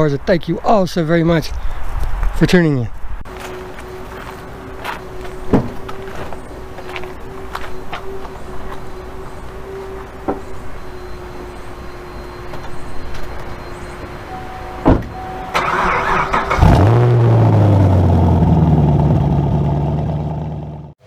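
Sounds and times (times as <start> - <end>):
car engine starting and idling: 13.6 - 21.0.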